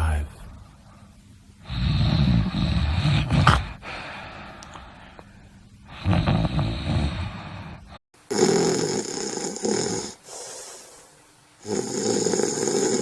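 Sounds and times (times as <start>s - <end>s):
person snoring: 1.6s - 4.2s, 5.8s - 13.0s.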